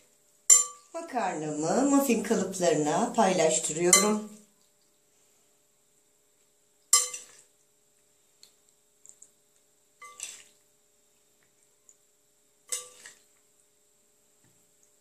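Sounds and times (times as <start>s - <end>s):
spoon clinking against a bowl: 0.5s - 0.9s, 3.9s - 4.3s, 7.0s - 7.4s.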